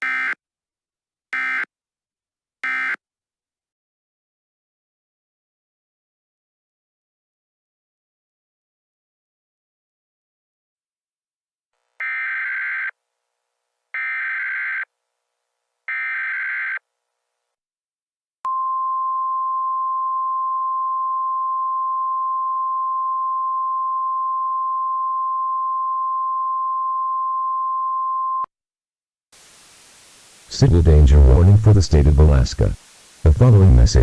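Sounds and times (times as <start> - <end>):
steady attention tone: 29.4 - 34.0.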